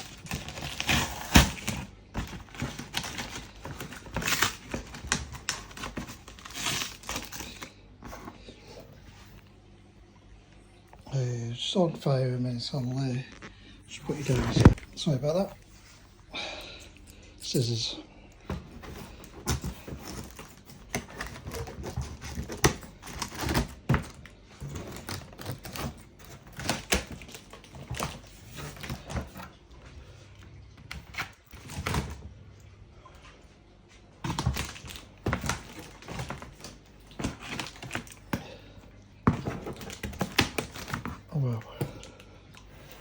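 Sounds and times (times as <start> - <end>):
scissors cutting packaging: 0.0 - 8.3, 18.5 - 29.5, 34.2 - 38.6, 39.3 - 42.0.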